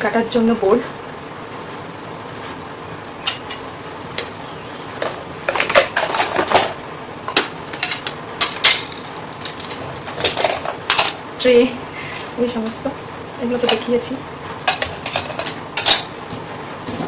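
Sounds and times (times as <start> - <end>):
toy kitchen pieces clacking: 5.5 - 11.2, 14.7 - 16.1.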